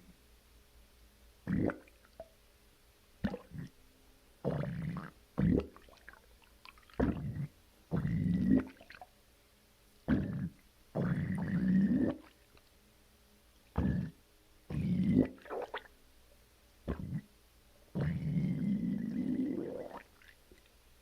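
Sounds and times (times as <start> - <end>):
stomach gurgling rumbles: 1.5 - 2.1, 3.2 - 3.7, 4.4 - 9.0, 10.1 - 12.4, 13.8 - 15.9, 16.9 - 17.3, 18.0 - 20.6.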